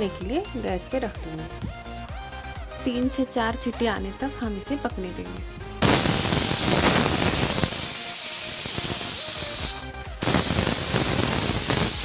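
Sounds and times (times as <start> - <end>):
pressure cooker steam hissing: 5.8 - 12.0.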